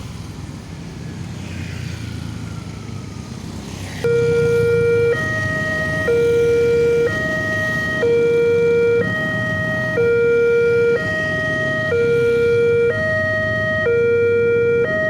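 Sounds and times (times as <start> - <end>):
road traffic rumble: 0.0 - 15.0
level crossing two-tone warning signal: 4.1 - 15.0.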